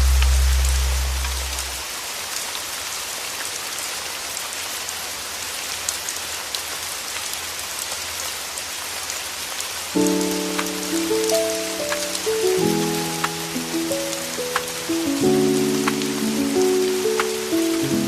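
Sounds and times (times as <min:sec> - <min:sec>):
music notes: 0:00.0 - 0:01.8, 0:10.0 - 0:18.0
steady rain hiss: 0:00.0 - 0:18.0
water drips ticking: 0:10.0 - 0:18.0.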